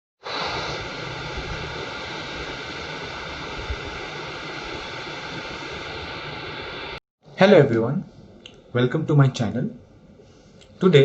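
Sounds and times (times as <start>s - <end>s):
steady background hiss: 0.3s - 11.0s.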